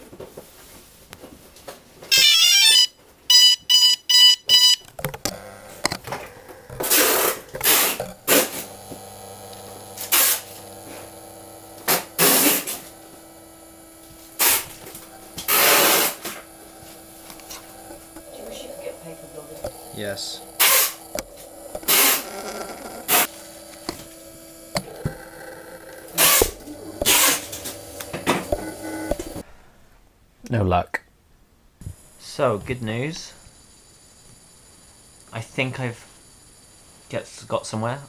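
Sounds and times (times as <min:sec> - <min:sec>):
short beeps: 0:02.1 - 0:04.8
drone motor hum: 0:04.5 - 0:29.4.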